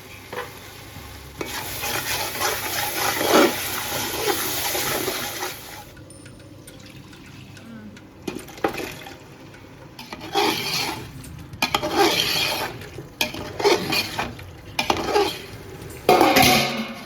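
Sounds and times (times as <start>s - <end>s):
spoon scraping a cooking pot: 10.0s - 17.0s.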